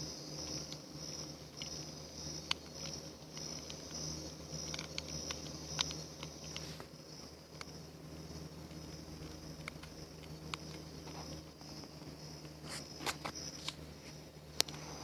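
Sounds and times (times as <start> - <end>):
high insect trill: 0.0 - 15.0
campfire crackling and popping: 2.4 - 6.7.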